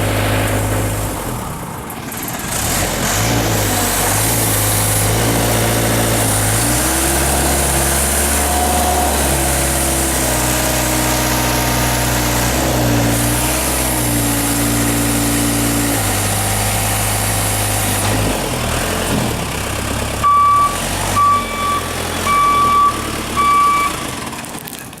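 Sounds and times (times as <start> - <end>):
backhoe diesel engine running: 0.0 - 25.0
short electronic beeps: 20.2 - 24.0.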